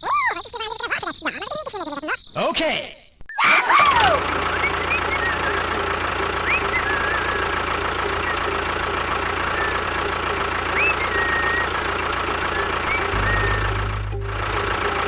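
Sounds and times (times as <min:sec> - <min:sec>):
small engine idling: 0:03.9 - 0:15.0
short high chirps: 0:12.6 - 0:14.9.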